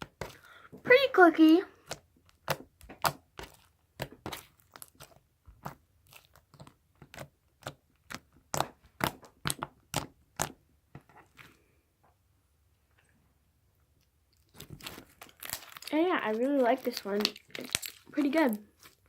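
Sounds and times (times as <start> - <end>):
slime clicking and popping: 1.8 - 10.6, 14.6 - 18.5.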